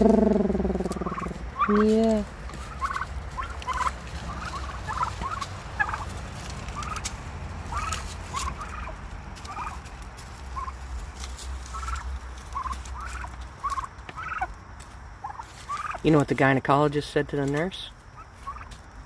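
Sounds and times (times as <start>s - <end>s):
low rumble: 0.0s - 13.9s
turkeys gobbling: 0.0s - 18.9s.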